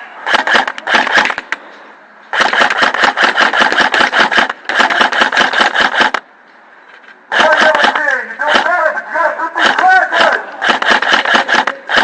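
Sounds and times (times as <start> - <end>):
airsoft guns firing full auto: 0.2 - 1.5, 2.3 - 6.2, 7.3 - 8.8, 9.6 - 12.0.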